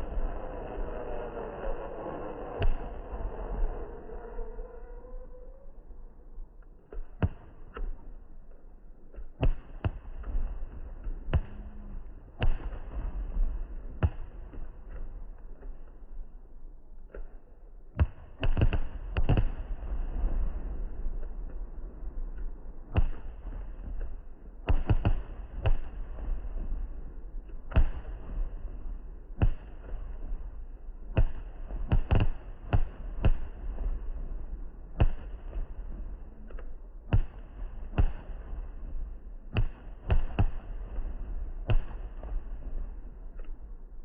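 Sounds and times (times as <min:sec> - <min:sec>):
steady low rumble: 0:00.0 - 0:44.0
fireworks bangs echoing: 0:22.9 - 0:43.1.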